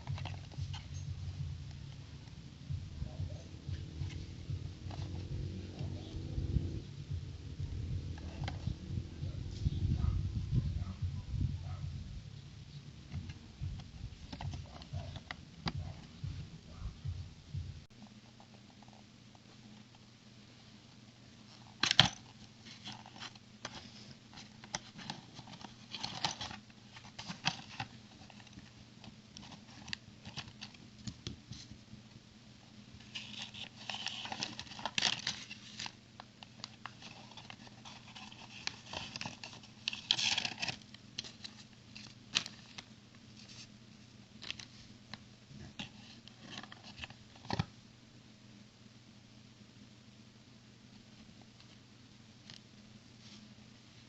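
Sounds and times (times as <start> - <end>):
packaging crinkling and tearing: 33.0 - 42.9.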